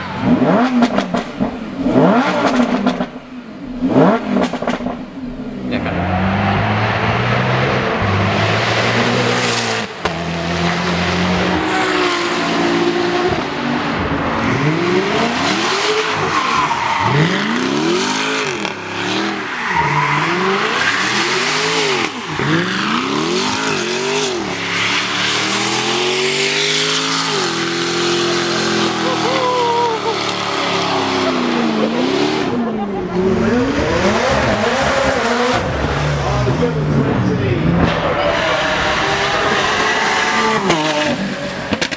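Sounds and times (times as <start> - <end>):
car engines at full throttle: 0.0 - 41.9.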